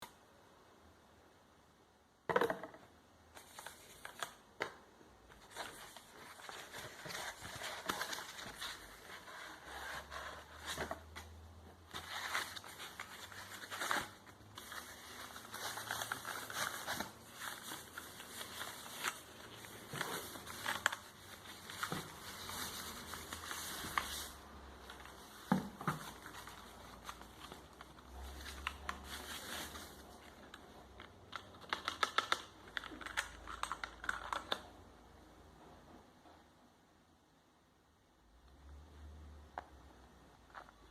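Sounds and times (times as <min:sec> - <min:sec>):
plastic and cardboard rustling: 0:03.4 - 0:34.6.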